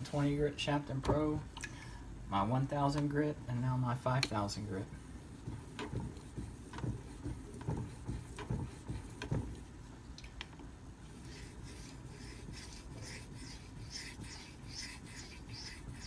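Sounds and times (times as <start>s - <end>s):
knife scraping on whetstone: 11.2s - 16.0s.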